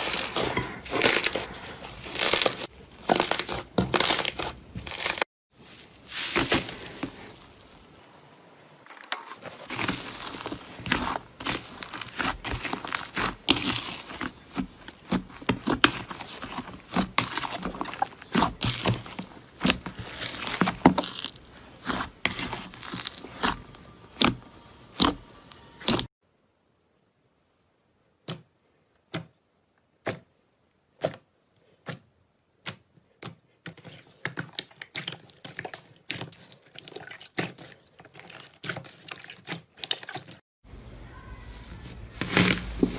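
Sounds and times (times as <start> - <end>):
slime crackling and popping: 9.7 - 24.4.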